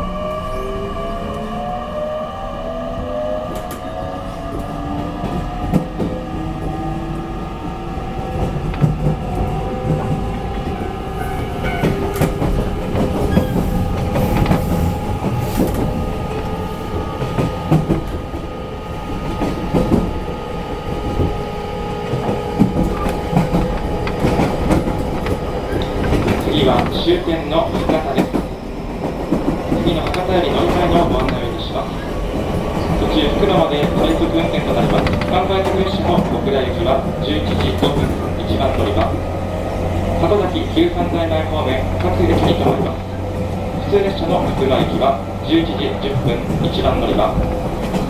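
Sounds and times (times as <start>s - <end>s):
wheel-on-rail rumble: 3.5s - 48.0s
clicks over rail joints: 22.0s - 28.4s, 29.3s - 31.7s, 32.8s - 39.2s.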